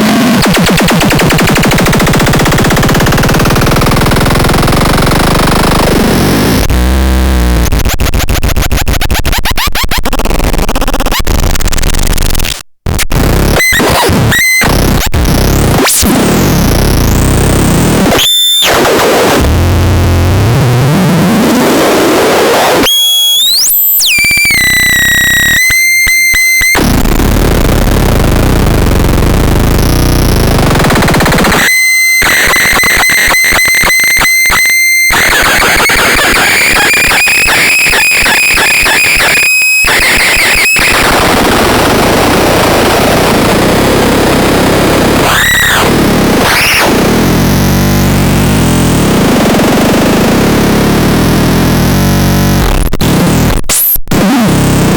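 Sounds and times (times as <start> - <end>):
harsh distorted electronic noise: 0.0 - 54.9
stuttering high tone: 29.9 - 43.6.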